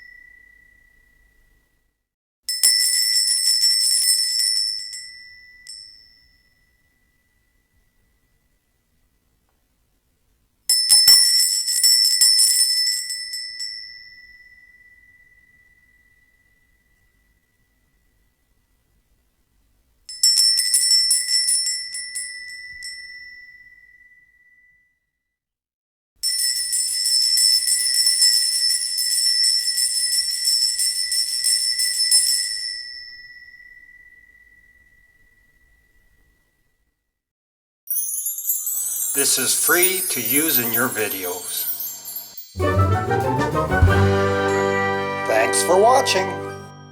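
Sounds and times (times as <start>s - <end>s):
tiny bell ringing: 2.5s - 8.5s, 10.7s - 17.9s, 37.9s - 42.7s.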